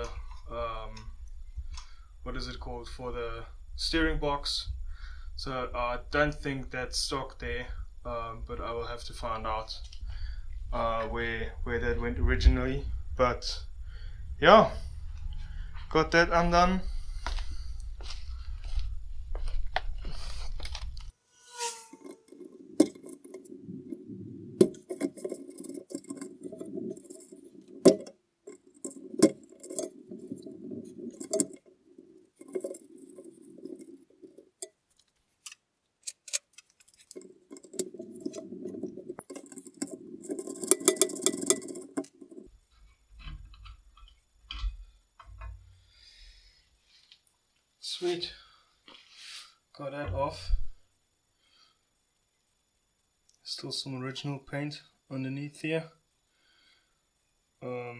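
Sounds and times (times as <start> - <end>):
wrenches and metal parts clinking: 24.6 - 34.7, 35.4 - 42.5.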